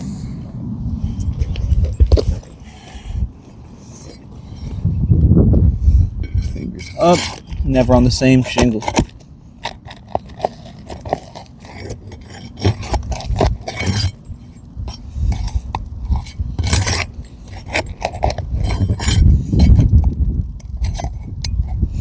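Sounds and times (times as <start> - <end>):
metal tool scraping shingles: 3.8 - 4.9, 5.9 - 22.0.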